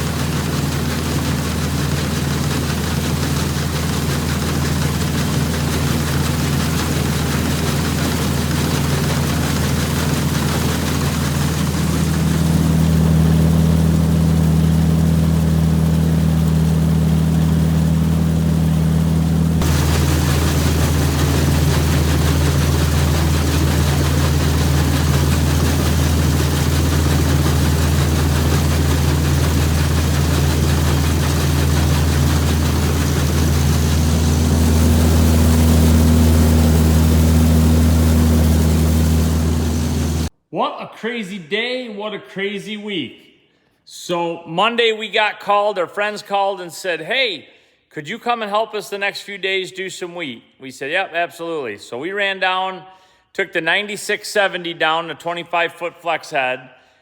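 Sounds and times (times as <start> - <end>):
harvester engine droning: 0.0 - 40.3.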